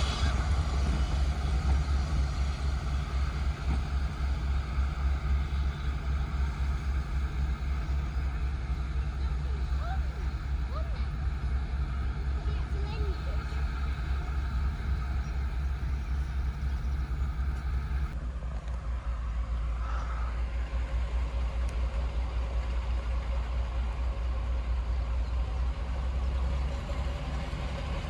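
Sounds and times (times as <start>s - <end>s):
higher hum: 0.0s - 18.2s
diesel locomotive engine rumbling: 0.0s - 28.0s.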